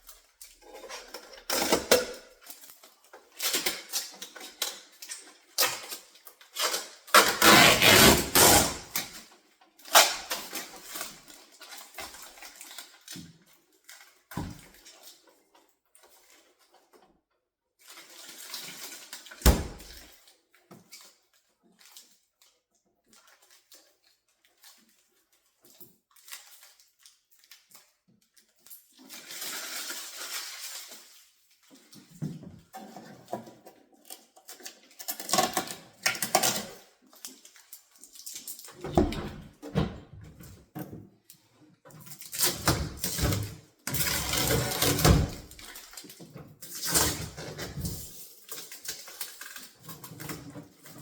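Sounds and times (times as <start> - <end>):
packaging rustling and scraping: 6.6 - 9.2, 42.0 - 51.0
heavy thud: 19.5 - 20.0.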